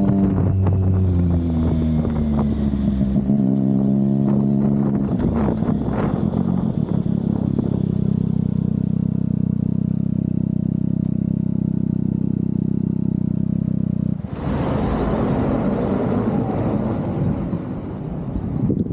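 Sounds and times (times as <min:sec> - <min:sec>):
motorcycle engine running: 0:00.0 - 0:18.9
rough rushing noise: 0:14.2 - 0:18.9.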